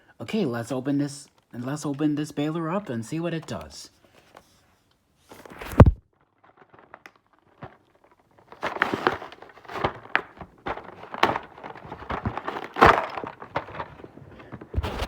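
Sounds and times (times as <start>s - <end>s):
packaging crackling and rustling: 5.3s - 15.0s
cardboard box thump: 5.6s - 6.0s, 8.7s - 15.0s.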